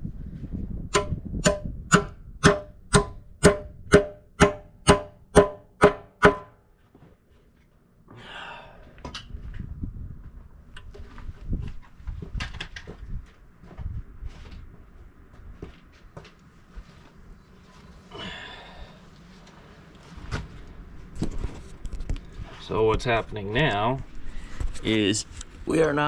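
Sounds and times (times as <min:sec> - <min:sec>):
hammer ringing on metal: 0:00.9 - 0:06.5.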